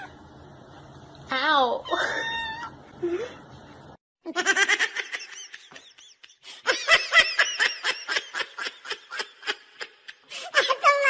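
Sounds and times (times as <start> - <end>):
person laughing hard: 4.3 - 10.6.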